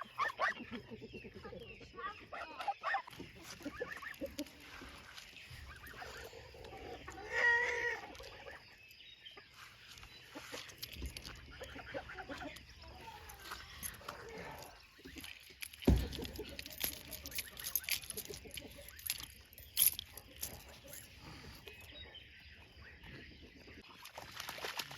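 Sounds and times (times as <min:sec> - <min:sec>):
chickens clucking: 0:00.0 - 0:19.5
wavering animal call: 0:05.6 - 0:08.6.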